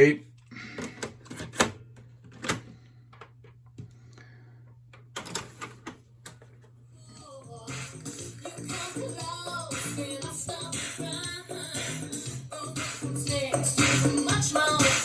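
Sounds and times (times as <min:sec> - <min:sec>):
faint tape playback: 0:00.0 - 0:15.0.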